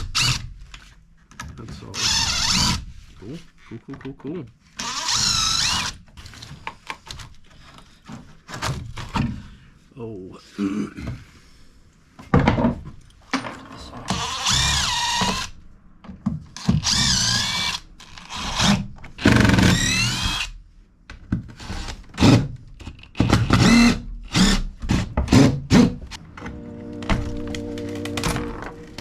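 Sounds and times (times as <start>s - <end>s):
power drill running: 4.8s - 6.0s, 16.8s - 20.5s.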